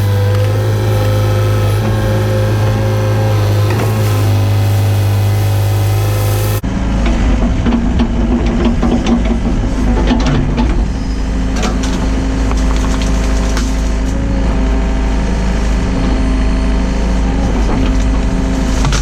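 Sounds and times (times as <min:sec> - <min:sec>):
excavator diesel engine running: 0:00.0 - 0:19.0
short knocks and clatter: 0:07.0 - 0:14.0.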